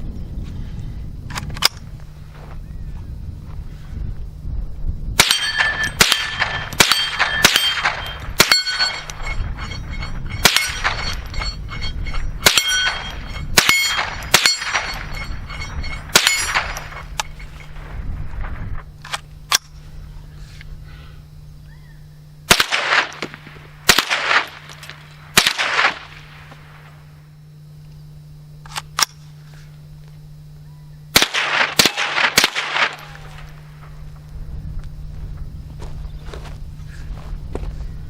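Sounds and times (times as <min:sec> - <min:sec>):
rifle shots: 0:05.2 - 0:17.0, 0:22.5 - 0:27.0, 0:31.1 - 0:33.6
steel target plates ringing: 0:05.2 - 0:17.8.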